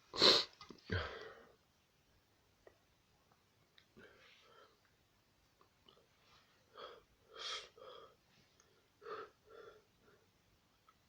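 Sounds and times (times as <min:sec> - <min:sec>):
person sneezing: 0:00.2 - 0:01.1.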